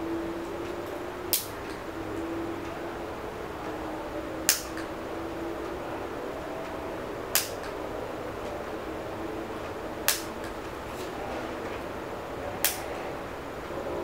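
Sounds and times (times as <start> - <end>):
nail clipper clicks: 1.3 - 1.8, 4.5 - 4.9, 7.3 - 7.8, 10.1 - 10.6, 12.6 - 12.9.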